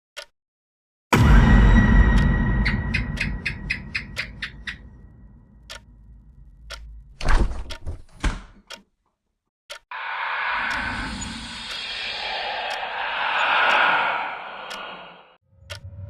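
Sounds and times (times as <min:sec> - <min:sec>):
sharp ticking clicks: 0:02.6 - 0:07.1, 0:09.7 - 0:15.9.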